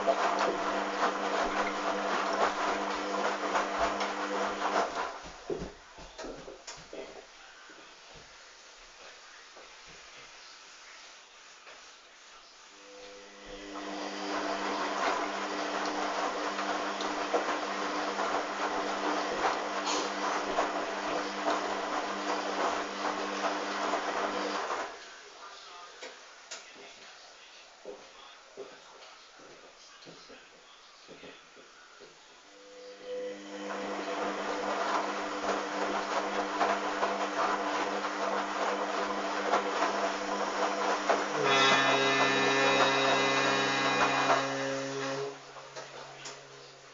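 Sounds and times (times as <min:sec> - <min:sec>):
washing machine running: 0:00.0 - 0:06.4, 0:12.8 - 0:25.2, 0:32.6 - 0:46.9
water noise: 0:14.2 - 0:24.9.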